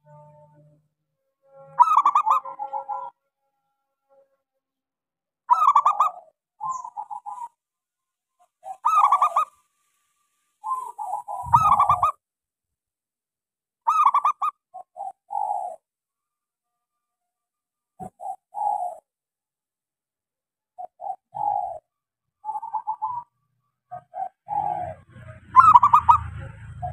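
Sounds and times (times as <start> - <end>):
dove cooing: 1.8 - 3.2, 5.5 - 7.6, 8.4 - 9.6, 10.6 - 12.2, 13.9 - 15.9, 18.0 - 19.1, 20.8 - 23.3, 23.9 - 26.9.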